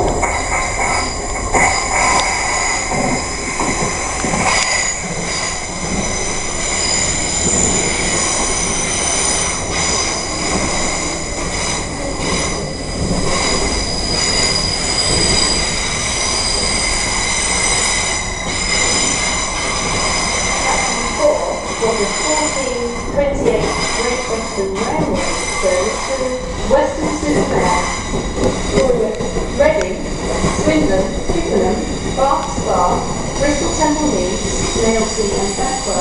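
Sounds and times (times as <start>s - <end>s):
train rumble: 0.0s - 36.0s
train wheels and brakes squealing: 0.0s - 36.0s.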